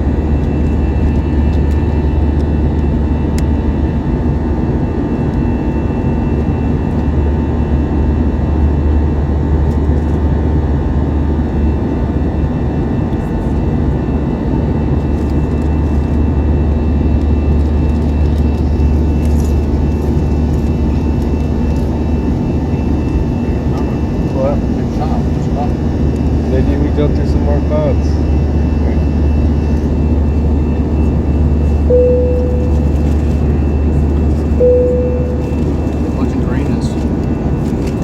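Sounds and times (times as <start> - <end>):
airliner cabin drone: 0.0 - 38.0.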